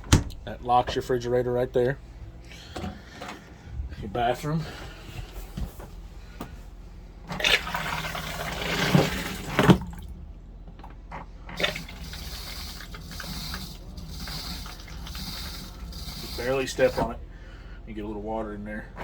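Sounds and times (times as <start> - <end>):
toilet flushing water rushing: 7.3 - 10.2, 11.5 - 17.2.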